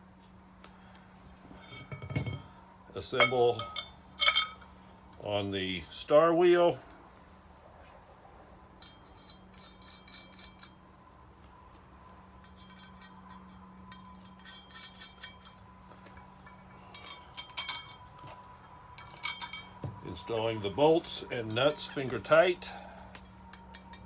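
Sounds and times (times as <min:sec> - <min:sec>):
faint steady hum: 0:00.0 - 0:24.0
metal bolts clinking and rattling: 0:01.6 - 0:04.7, 0:08.8 - 0:10.8, 0:12.4 - 0:24.0.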